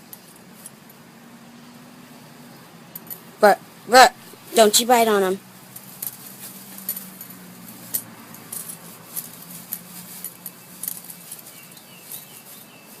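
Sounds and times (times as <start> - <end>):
metallic clicks and jingles: 2.7 - 3.4, 5.7 - 12.7.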